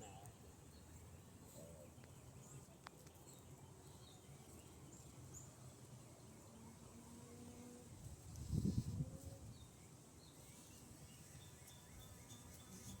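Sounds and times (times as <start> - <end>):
faint bird chirps: 9.4 - 13.0.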